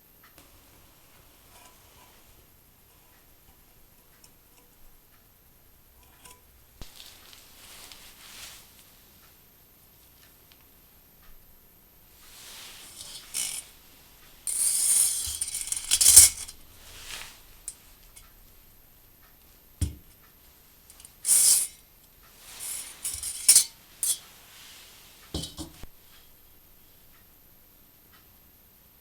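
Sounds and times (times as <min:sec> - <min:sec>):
wire hanger rattling against cookware: 0:12.9 - 0:13.6, 0:14.5 - 0:16.6, 0:20.9 - 0:21.8, 0:22.6 - 0:24.3, 0:25.4 - 0:25.8.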